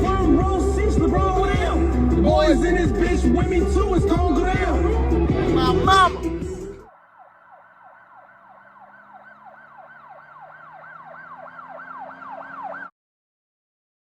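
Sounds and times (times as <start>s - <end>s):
siren yelping: 5.6s - 6.2s, 6.8s - 12.9s.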